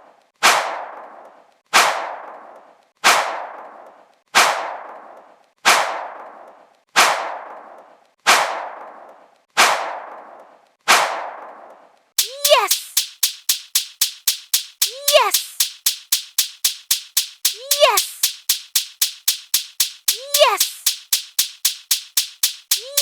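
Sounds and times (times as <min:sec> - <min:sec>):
sharp crack sound effect: 0:12.2 - 0:23.0.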